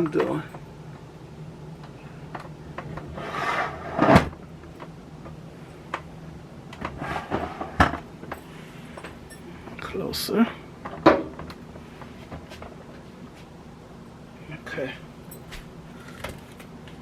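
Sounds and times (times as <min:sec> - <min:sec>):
camera stand scraping: 0:03.2 - 0:04.3, 0:07.0 - 0:08.0.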